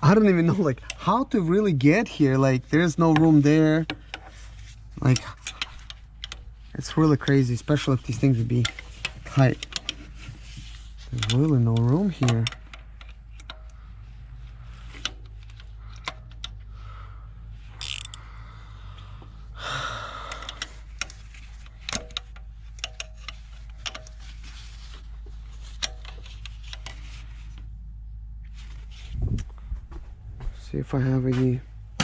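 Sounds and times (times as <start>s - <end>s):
rustling noise: 10.0s - 11.2s, 23.4s - 27.8s, 28.4s - 30.7s
hand tools clicking on metal: 17.8s - 18.2s.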